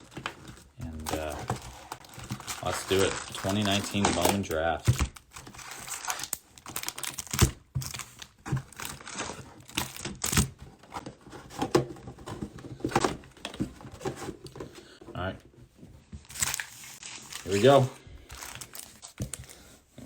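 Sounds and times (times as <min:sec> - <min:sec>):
plastic shrink-wrap tearing and crinkling: 0:00.8 - 0:10.6, 0:16.3 - 0:19.6.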